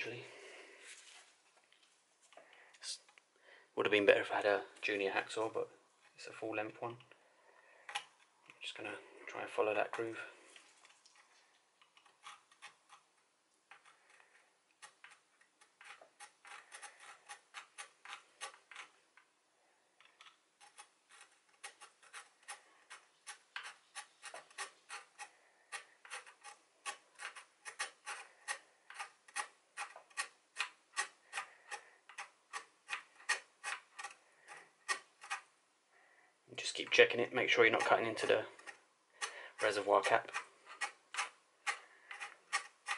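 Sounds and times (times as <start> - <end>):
hacksaw cutting metal: 37.6 - 42.9.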